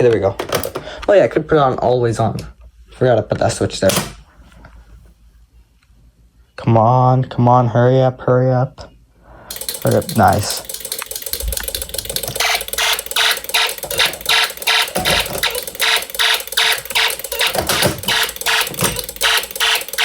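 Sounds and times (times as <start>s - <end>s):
steady alarm tone: 9.5s - 20.0s
fire alarm harsh pulsing: 12.4s - 20.0s.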